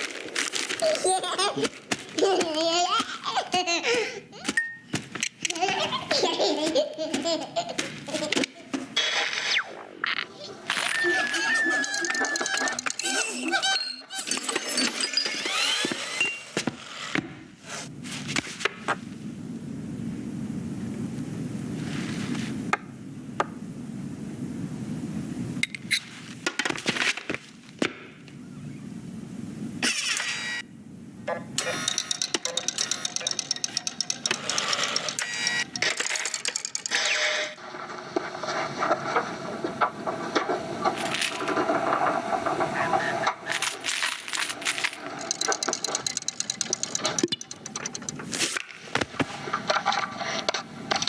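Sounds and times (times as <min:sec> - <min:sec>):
sharp clicks and clinks: 0:31.6 - 0:37.1, 0:43.6 - 0:48.3
clicks knocks and clatters: 0:43.6 - 0:48.3.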